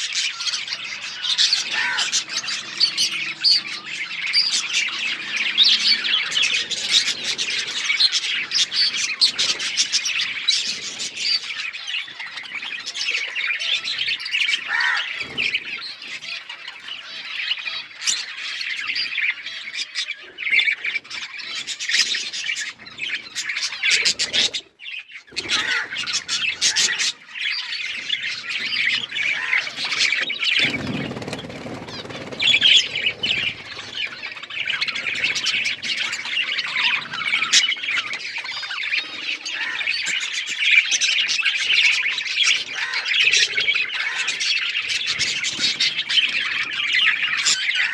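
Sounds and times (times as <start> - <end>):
budgerigars chirping and chattering: 0.0 - 47.9.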